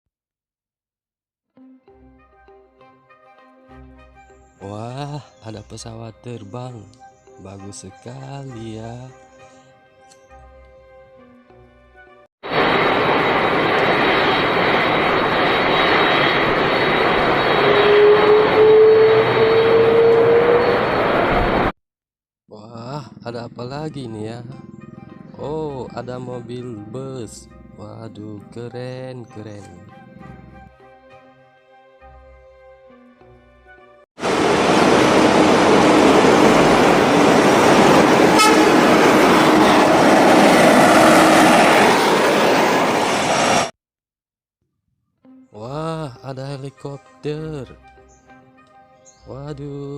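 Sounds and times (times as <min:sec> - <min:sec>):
airplane engine whine: 0:12.4 - 0:21.7, 0:34.2 - 0:43.7
road vehicle noise: 0:12.5 - 0:21.7, 0:29.9 - 0:30.7, 0:34.2 - 0:43.7
faint horn-like tone: 0:38.3 - 0:38.9.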